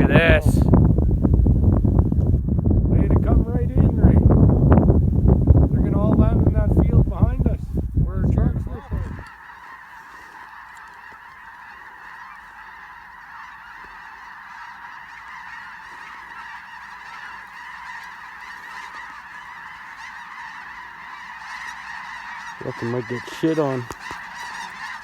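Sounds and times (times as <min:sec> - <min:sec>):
flock of geese honking: 0:05.8 - 0:07.6, 0:08.2 - 0:25.0.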